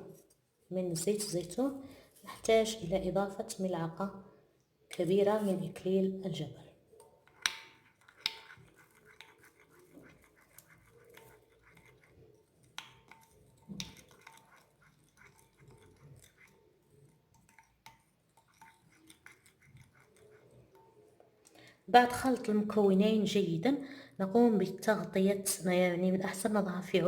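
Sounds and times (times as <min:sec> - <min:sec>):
spoon stirring and scraping: 0:04.9 - 0:22.8
spoon clicking against container: 0:07.0 - 0:21.0.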